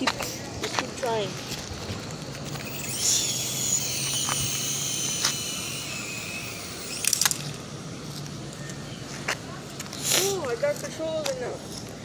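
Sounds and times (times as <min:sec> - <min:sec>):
toy helicopter rotor motor whine: 0:02.4 - 0:07.8
sharp clicks: 0:02.5 - 0:07.6.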